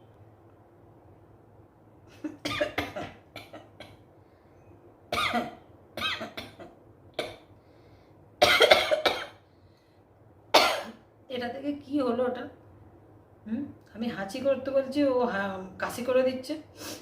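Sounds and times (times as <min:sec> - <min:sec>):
woman coughing: 0:02.3 - 0:04.0, 0:05.1 - 0:07.4, 0:08.4 - 0:09.4, 0:10.6 - 0:11.0.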